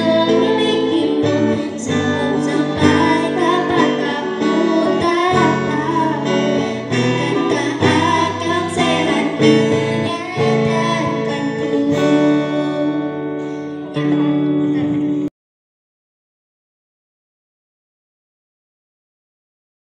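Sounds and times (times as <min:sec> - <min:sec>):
acoustic guitar strumming: 0:00.0 - 0:15.3
person singing: 0:00.0 - 0:15.3.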